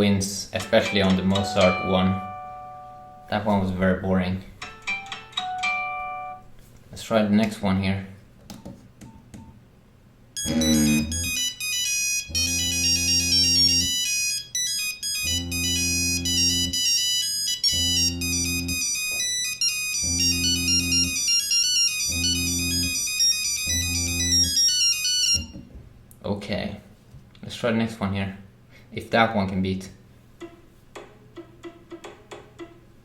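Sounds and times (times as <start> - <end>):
polyphonic phone ringtone: 0.6 - 3.3, 4.7 - 6.4, 10.4 - 25.6.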